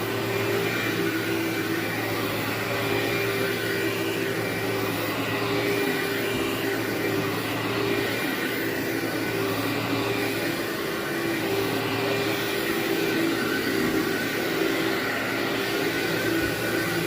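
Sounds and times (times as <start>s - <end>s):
vacuum cleaner on carpet: 0.0s - 17.0s.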